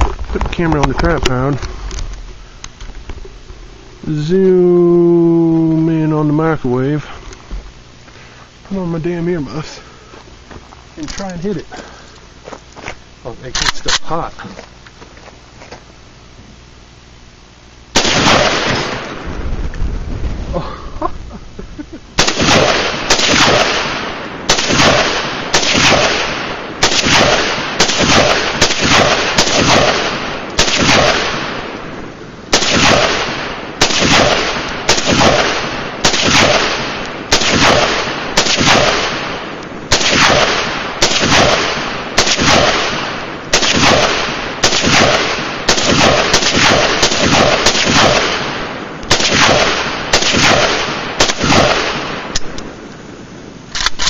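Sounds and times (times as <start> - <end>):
rifle shots: 17.9 - 19.4, 22.2 - 52.6, 53.7 - 54.0.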